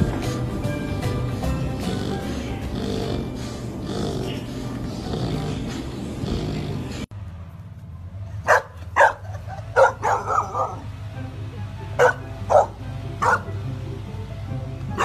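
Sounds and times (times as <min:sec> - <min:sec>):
background music: 0:00.0 - 0:07.1, 0:10.1 - 0:15.0
dog barking: 0:08.5 - 0:10.9, 0:12.0 - 0:13.5.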